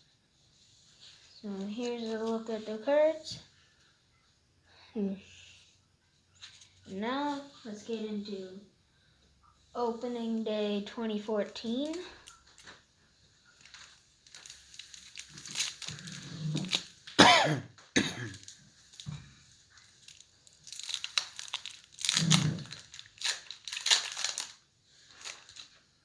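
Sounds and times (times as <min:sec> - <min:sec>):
foil wrapper crinkling and tearing: 0:13.5 - 0:17.2, 0:18.3 - 0:25.8.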